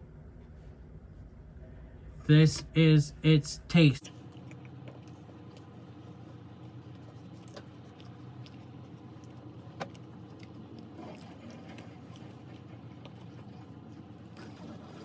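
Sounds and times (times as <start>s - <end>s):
steady low hum: 0.0s - 15.0s
quiet chewing: 4.1s - 15.0s.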